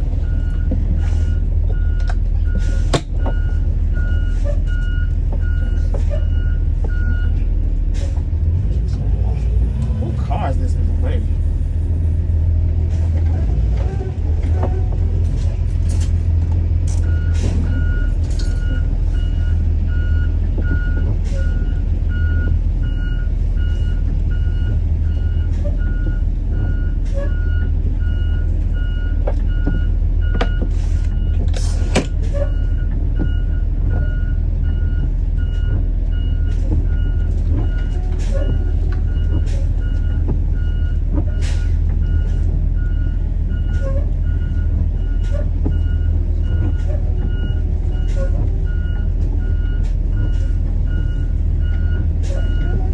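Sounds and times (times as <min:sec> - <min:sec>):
bus engine running: 0:00.0 - 0:52.9
reversing alarm beeping: 0:16.9 - 0:31.3, 0:32.5 - 0:52.8.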